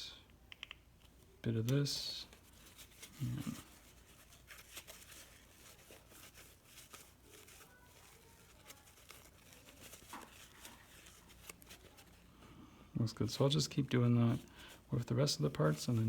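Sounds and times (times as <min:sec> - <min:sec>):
faint rubbing: 0:02.3 - 0:12.3.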